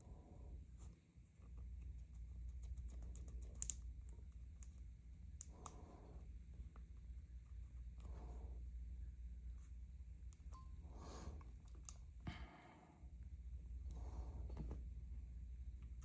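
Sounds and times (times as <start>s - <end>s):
steady low hum: 0.0s - 16.0s
small metal clicks and taps: 2.5s - 3.8s.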